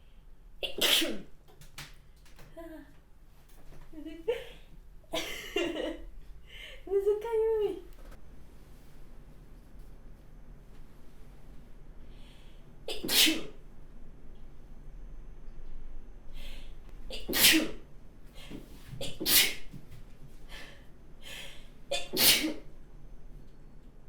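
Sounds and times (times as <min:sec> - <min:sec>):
woman sneezing: 0:00.6 - 0:01.3, 0:12.9 - 0:13.6, 0:17.2 - 0:17.8, 0:19.0 - 0:19.7, 0:21.9 - 0:22.7.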